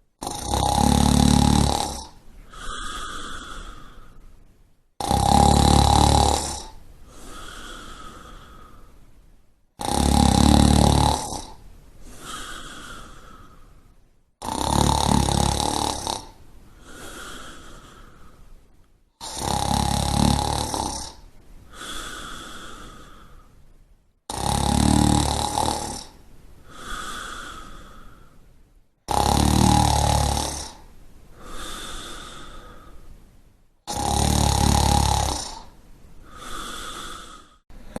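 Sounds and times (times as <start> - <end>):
person snoring: 0.2 - 4.2, 5.0 - 8.9, 9.8 - 13.7, 14.4 - 18.4, 19.2 - 23.6, 24.3 - 28.4, 29.1 - 33.0, 33.8 - 38.0
soft breath: 2.2 - 4.6, 6.8 - 9.3, 12.0 - 14.1, 16.7 - 18.8, 21.1 - 23.8, 26.6 - 28.6, 30.7 - 33.3, 35.5 - 38.0.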